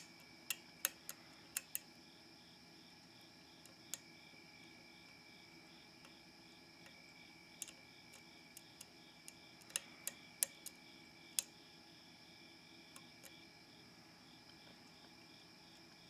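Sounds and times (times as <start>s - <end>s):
lock pick metallic clicks: 0.0s - 1.8s, 7.6s - 10.8s.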